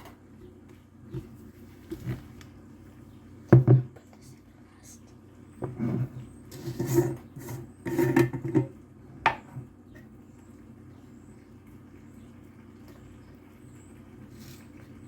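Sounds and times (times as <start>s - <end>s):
rubbing and scraping: 5.7s - 8.7s.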